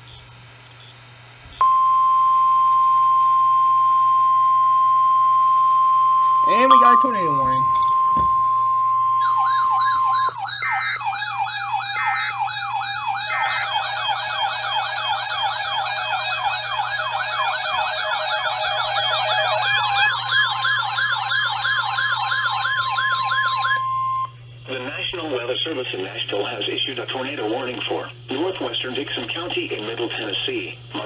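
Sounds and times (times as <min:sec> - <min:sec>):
electronic sirens sweeping in pitch: 0:05.2 - 0:24.3
short high beeps: 0:06.2 - 0:08.4
steady alert tone: 0:06.4 - 0:07.9, 0:09.2 - 0:20.1.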